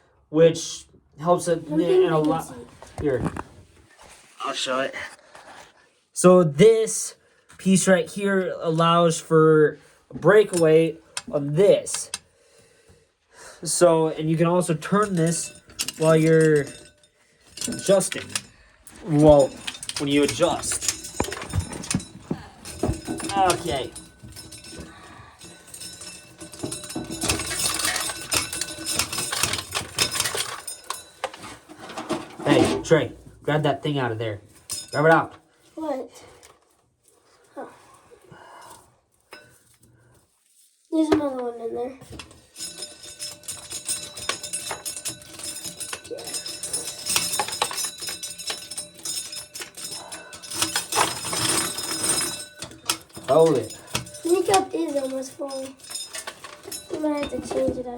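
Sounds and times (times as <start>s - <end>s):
corn sheller rattling: 14.2s - 33.1s, 42.2s - 57.9s.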